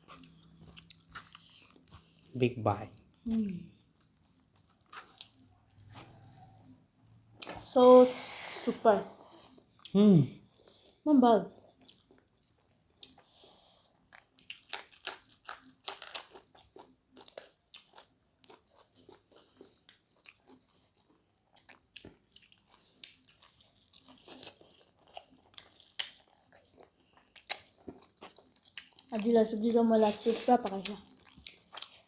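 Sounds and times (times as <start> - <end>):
chewing with wet mouth clicks: 0.0 - 3.4, 4.0 - 6.7, 11.6 - 13.4, 14.0 - 29.3, 30.6 - 32.0.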